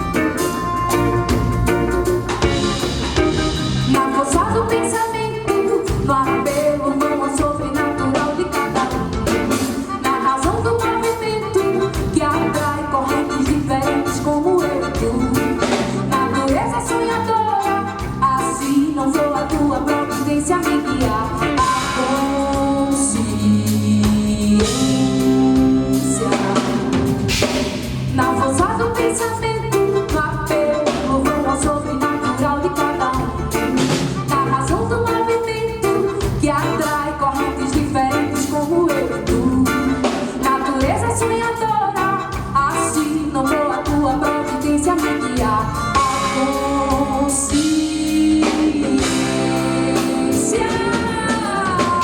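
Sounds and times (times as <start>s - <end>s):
drum kit and percussion: 0.0s - 52.0s
electric guitar: 0.0s - 52.0s
keyboards: 0.0s - 52.0s
melodic lead line: 0.0s - 52.0s.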